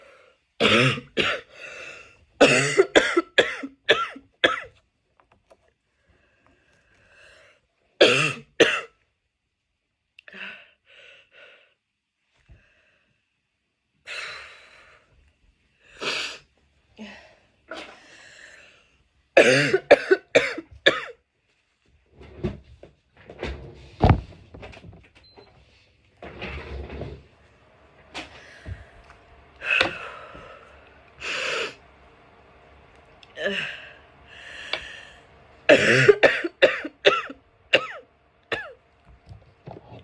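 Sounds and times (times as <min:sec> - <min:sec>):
woman coughing: 0:00.6 - 0:01.5, 0:02.4 - 0:04.7, 0:08.0 - 0:08.9, 0:19.4 - 0:21.2, 0:35.7 - 0:38.8.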